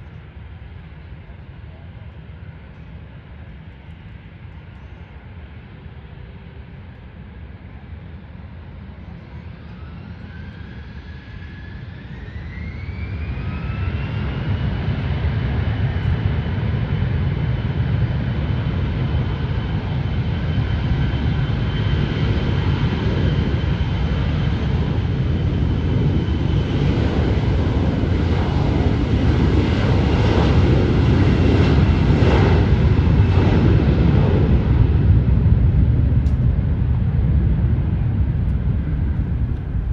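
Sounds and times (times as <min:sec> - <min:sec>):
jet engines spooling up: 0:31.2 - 0:39.9.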